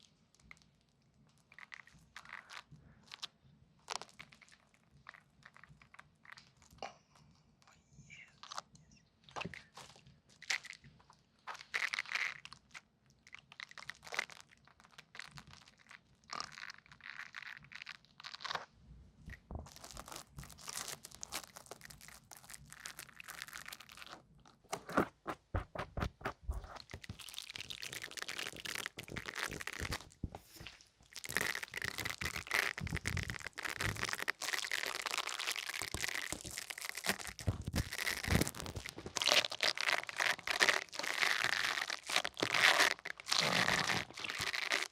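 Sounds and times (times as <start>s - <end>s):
close crunching and crinkling: 19.3s - 44.9s.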